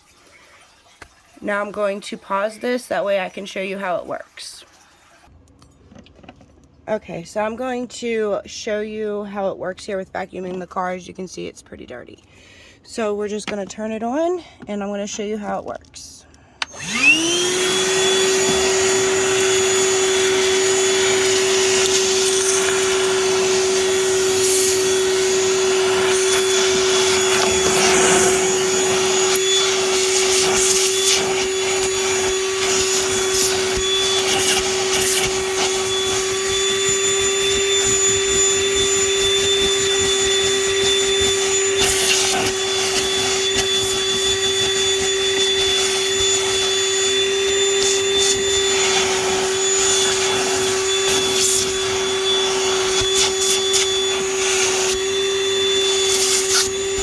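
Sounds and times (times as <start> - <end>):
vacuum motor humming: 16.6 - 57.0.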